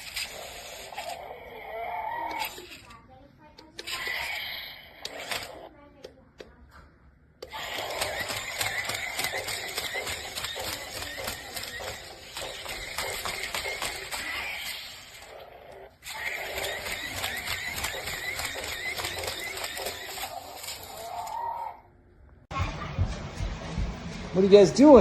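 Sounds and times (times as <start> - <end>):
toy electric motor whirring: 0.0 - 3.0, 3.6 - 5.8, 7.4 - 21.7
rapid mechanical clicking: 7.4 - 15.4, 16.0 - 21.0.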